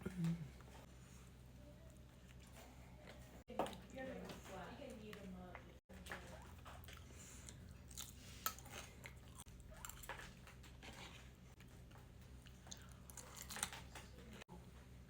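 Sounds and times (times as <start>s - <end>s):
person chewing food: 6.0s - 14.2s.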